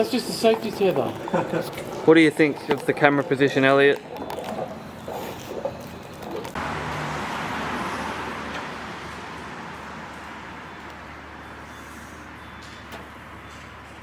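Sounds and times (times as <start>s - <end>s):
tyre and road noise: 0.0s - 14.0s
car engine hum: 4.0s - 14.0s.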